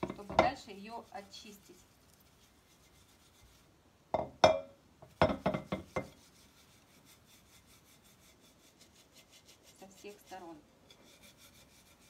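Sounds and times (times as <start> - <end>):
dish knocking and clinking: 0.0 - 0.5, 4.1 - 6.1
cloth scrubbing a dish: 0.0 - 12.0.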